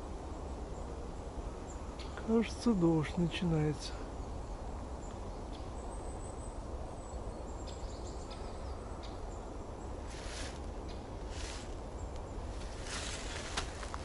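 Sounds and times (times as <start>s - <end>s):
faint light ticks: 12.1s - 12.3s.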